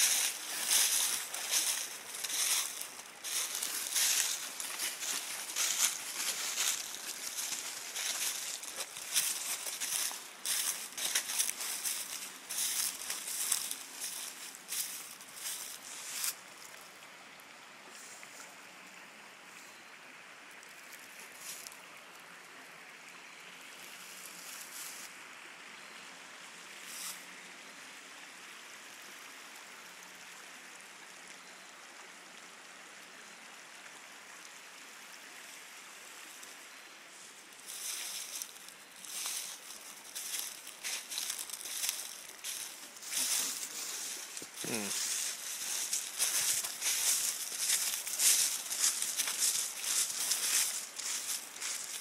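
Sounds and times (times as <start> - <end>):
leaves crunching underfoot: 0.0 - 16.8, 37.6 - 52.0
creek water running over rocks: 0.0 - 52.0.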